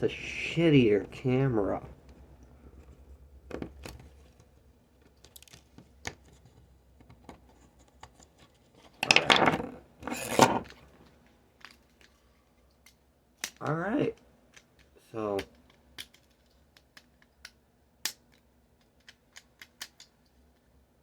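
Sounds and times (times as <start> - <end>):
small clicks and taps of tools: 14.5 - 20.7.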